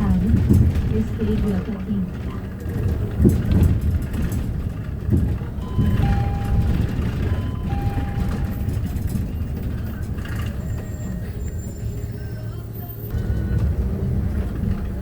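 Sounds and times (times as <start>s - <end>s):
thumps: 0.0s - 10.6s
bus engine and road rumble: 0.0s - 15.0s.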